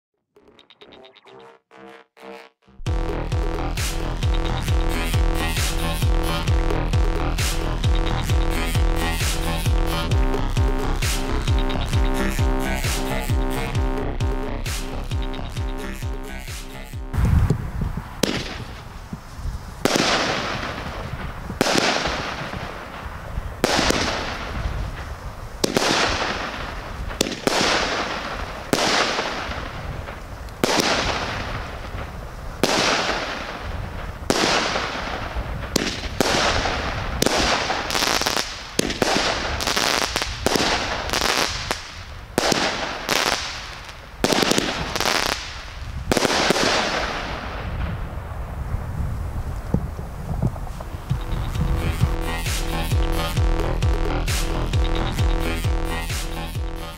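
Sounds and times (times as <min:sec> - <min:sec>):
firework shots: 0:16.4 - 0:53.2.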